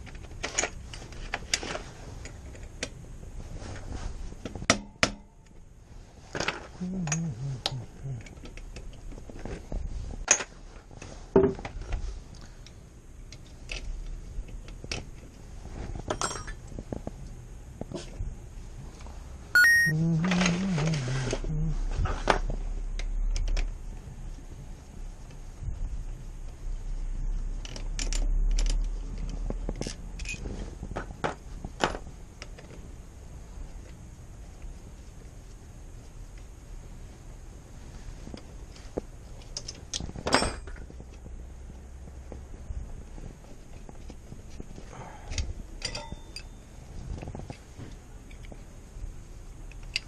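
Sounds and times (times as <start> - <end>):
metal tools clinking and knocking: 45.8 - 46.6.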